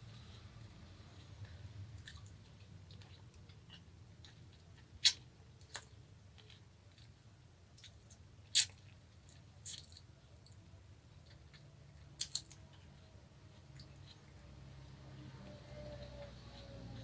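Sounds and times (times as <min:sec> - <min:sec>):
ginger crunching while chewed: 0:02.0 - 0:07.2, 0:07.8 - 0:10.6, 0:11.2 - 0:14.2.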